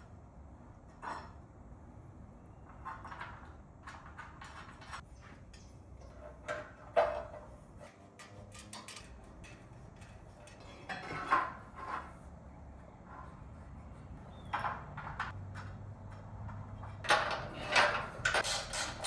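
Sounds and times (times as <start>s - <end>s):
metal parts clicking and tapping: 8.2s - 11.5s, 14.4s - 19.0s.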